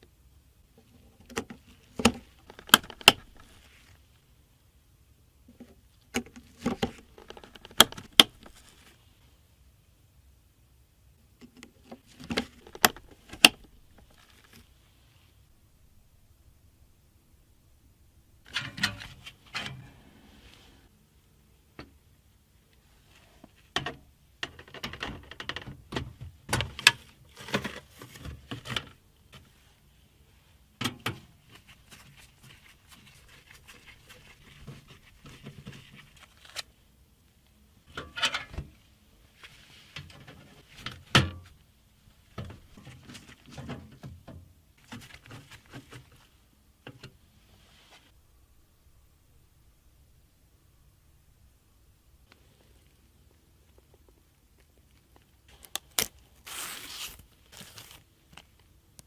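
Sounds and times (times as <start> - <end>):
computer parts clicking and knocking: 23.8 - 27.8.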